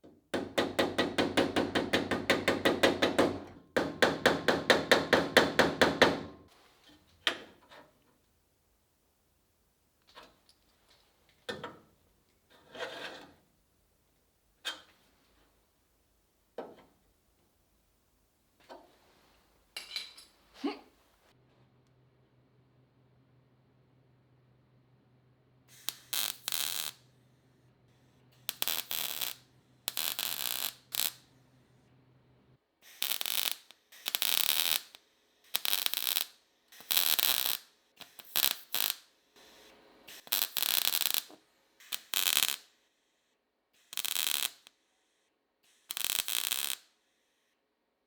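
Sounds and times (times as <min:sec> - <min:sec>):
welder crackling bursts: 0:25.7 - 0:27.1, 0:28.4 - 0:31.3, 0:32.8 - 0:42.8, 0:43.8 - 0:44.7, 0:45.7 - 0:47.0.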